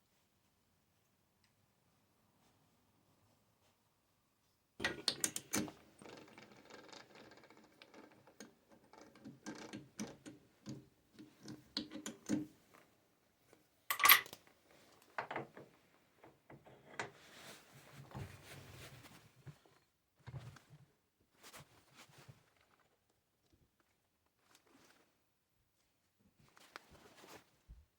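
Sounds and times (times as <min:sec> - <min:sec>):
metal parts clinking and rattling: 0:13.9 - 0:14.4.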